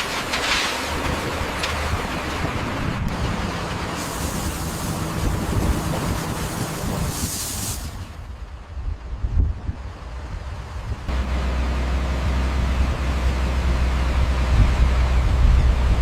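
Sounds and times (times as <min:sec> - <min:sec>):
heavy machinery rumbling: 0:00.0 - 0:16.0
short hisses: 0:06.6 - 0:08.2.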